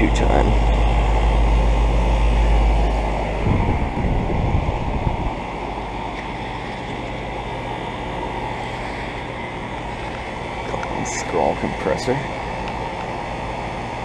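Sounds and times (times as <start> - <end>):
air conditioner compressor and fan hum: 0.0 - 14.0
wind rumble on microphone: 1.2 - 6.9.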